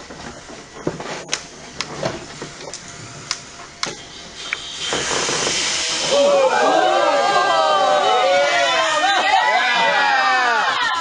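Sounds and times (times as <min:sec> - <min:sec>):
hiss: 0:03.8 - 0:06.7.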